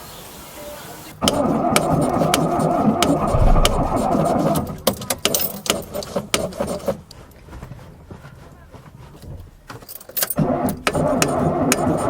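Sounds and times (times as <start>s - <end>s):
car engine starting: 1.2s - 4.8s, 10.3s - 12.0s
sharp clicks and pops: 3.0s - 5.4s.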